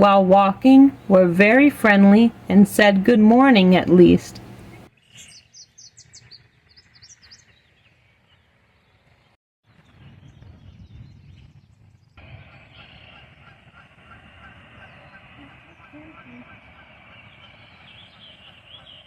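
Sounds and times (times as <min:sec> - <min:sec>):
distant geese honking: 0:00.0 - 0:04.9, 0:12.2 - 0:19.0
faint outdoor background: 0:00.0 - 0:19.0
high bird chirps: 0:04.6 - 0:08.0.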